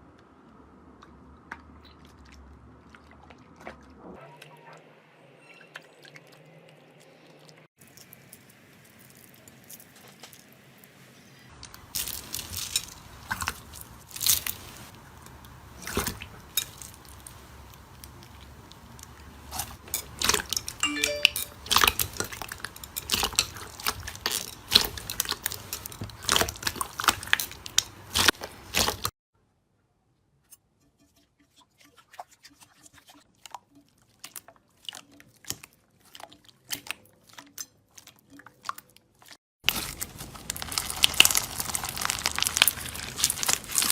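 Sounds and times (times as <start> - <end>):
slime crackling and popping: 21.7 - 29.1, 37.6 - 43.9.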